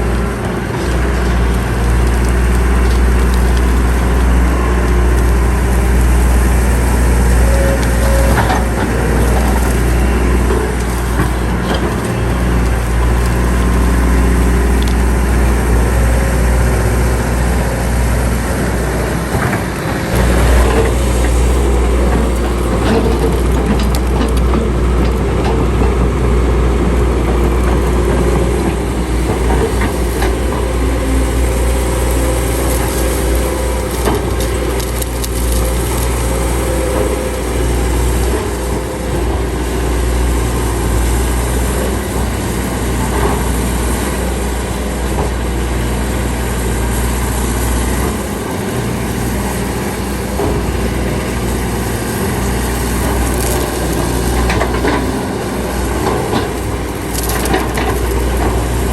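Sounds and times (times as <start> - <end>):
diesel engine droning: 0.0 - 58.9
machinery knocks and clanks: 18.6 - 45.5.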